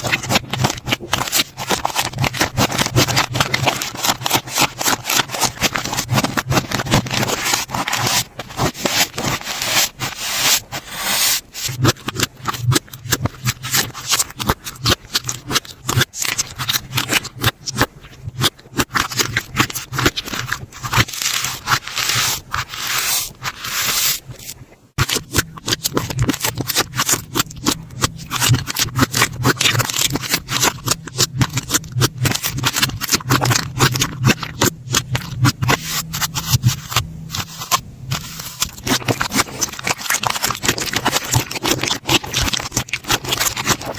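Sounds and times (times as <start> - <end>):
slime crackling and popping: 0.0 - 10.6, 25.0 - 43.9.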